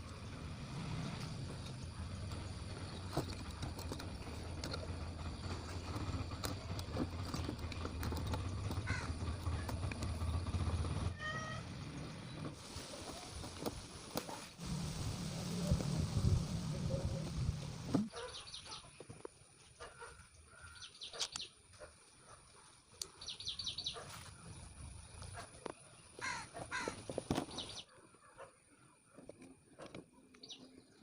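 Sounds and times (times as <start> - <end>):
birds chirping: 0.1 - 13.7, 16.6 - 22.4, 23.0 - 31.0
harsh falling bird calls: 2.0 - 12.5, 26.0 - 28.0
crow cawing: 8.8 - 9.2, 26.2 - 27.0.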